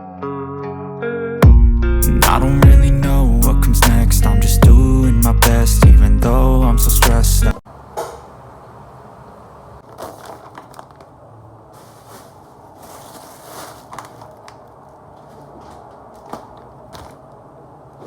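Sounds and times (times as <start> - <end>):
small objects clicking and rustling: 9.8 - 11.2, 11.8 - 17.2.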